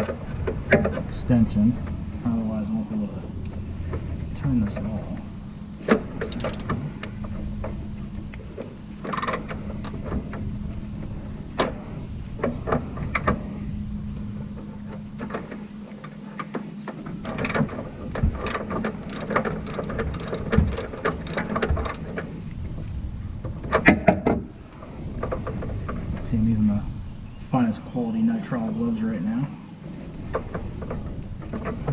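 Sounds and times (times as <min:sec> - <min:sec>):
steady low hum: 0:00.0 - 0:31.9
ratchet wrench metal clicks: 0:06.2 - 0:06.7, 0:09.1 - 0:09.5, 0:17.2 - 0:17.7, 0:18.4 - 0:22.2.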